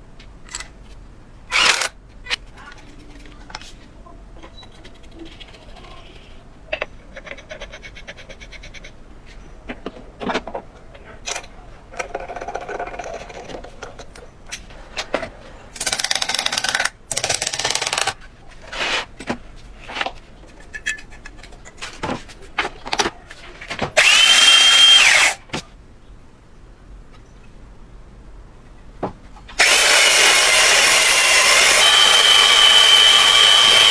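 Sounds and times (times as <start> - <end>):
power tool motor whining: 1.5 - 1.9, 24.0 - 25.4, 29.6 - 33.9.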